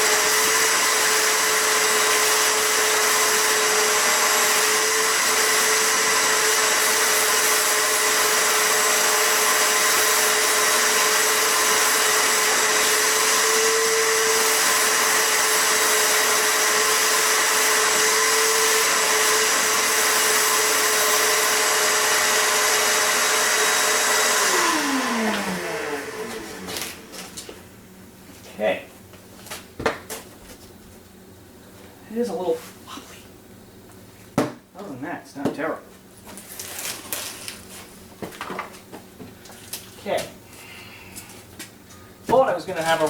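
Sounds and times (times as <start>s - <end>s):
shop vacuum running: 0.0s - 28.8s, 42.3s - 43.0s.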